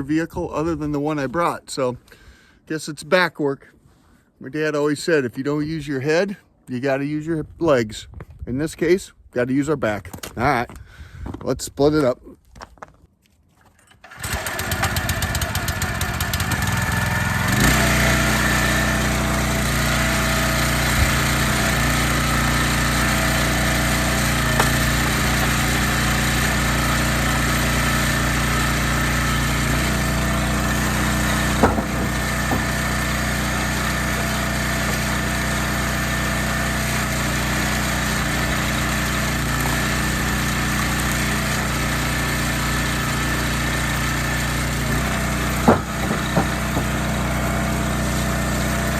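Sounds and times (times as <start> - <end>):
small gas engine running: 14.0 - 48.9
sharp knocks: 31.5 - 33.1, 45.5 - 47.3.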